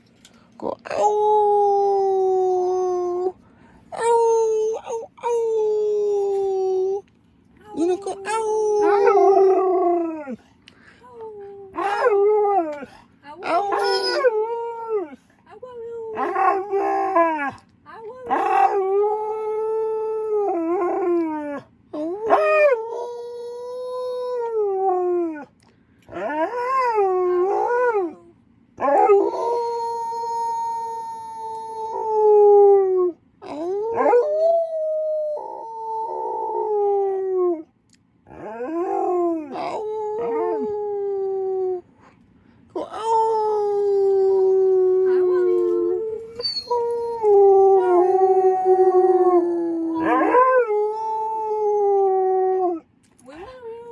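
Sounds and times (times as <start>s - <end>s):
wolfdog howling: 7.8s - 10.4s, 11.7s - 15.2s, 16.1s - 17.6s, 18.3s - 21.6s, 22.2s - 25.5s, 28.8s - 37.6s, 38.3s - 41.8s, 42.8s - 52.8s.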